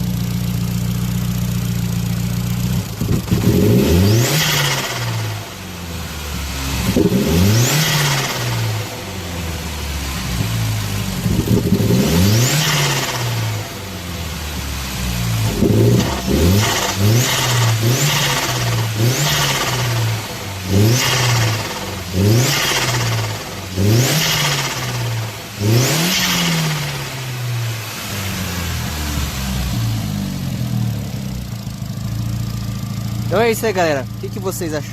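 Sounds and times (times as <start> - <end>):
car engine revving: 0.0 - 34.9.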